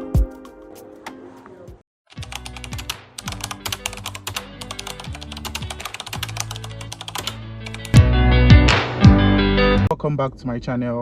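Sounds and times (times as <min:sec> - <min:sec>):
background music with bass beat: 0:07.4 - 0:09.9.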